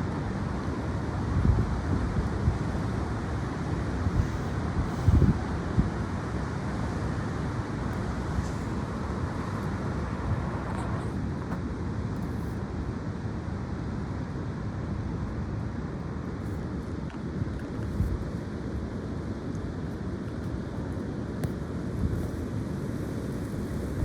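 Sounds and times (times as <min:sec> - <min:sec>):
gusty wind buffeting microphone: 0:01.1 - 0:12.4.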